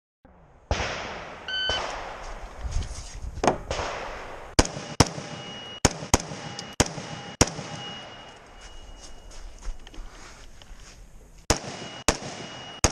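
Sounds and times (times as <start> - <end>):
rifle shots: 0.7 - 2.6, 3.6 - 8.3, 11.5 - 12.9
shot timer beep: 1.5 - 1.8, 4.8 - 9.3, 11.7 - 12.9
steel targets ringing: 4.8 - 9.3, 11.7 - 12.9.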